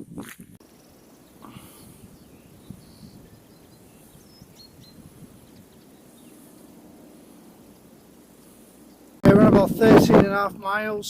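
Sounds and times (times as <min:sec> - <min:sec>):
low wind rumble: 0:00.0 - 0:11.0
high bird chirps: 0:00.7 - 0:06.8.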